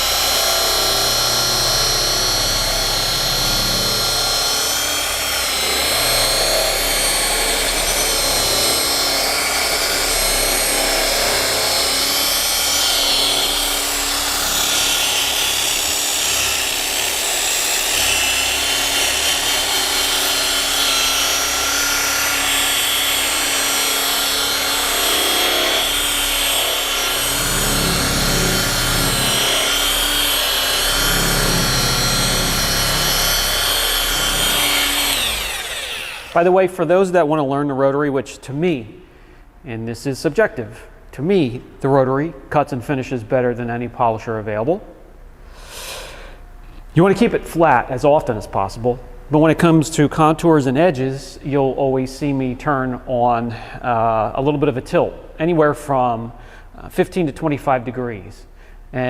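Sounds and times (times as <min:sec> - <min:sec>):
rotary polisher motor whine: 0:00.0 - 0:36.4.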